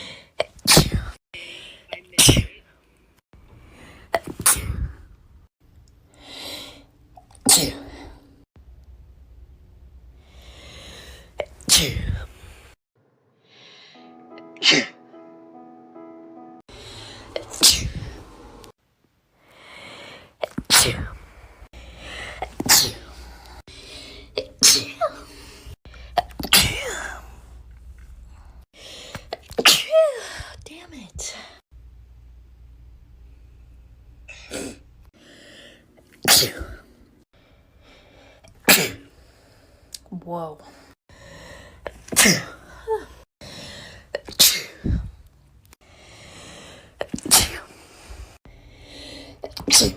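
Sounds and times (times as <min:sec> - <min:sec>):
drawn-in breath: 0:12.4 - 0:14.0, 0:16.7 - 0:18.7, 0:19.4 - 0:20.4, 0:40.7 - 0:41.9, 0:45.8 - 0:47.0
women sneezing: 0:17.5 - 0:18.1, 0:24.4 - 0:25.2, 0:26.4 - 0:27.2, 0:29.6 - 0:30.3, 0:42.1 - 0:43.0, 0:47.2 - 0:47.7, 0:49.5 - 0:49.9.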